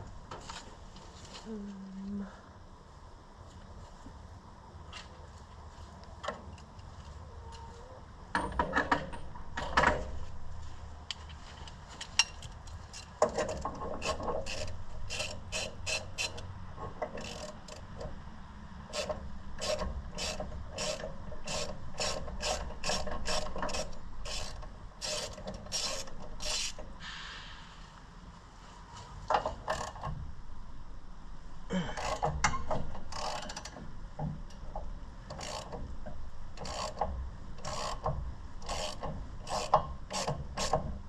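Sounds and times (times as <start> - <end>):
ratchet wrench clicking: 12.9 - 16.5, 17.1 - 18.0, 18.9 - 26.8, 29.6 - 30.1, 32.0 - 33.8, 35.3 - 35.9, 36.6 - 40.8.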